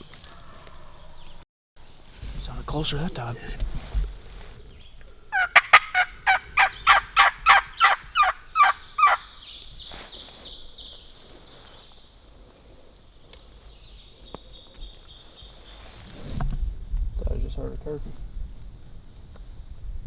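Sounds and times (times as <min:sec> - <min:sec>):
turkey yelps: 0:05.3 - 0:09.3.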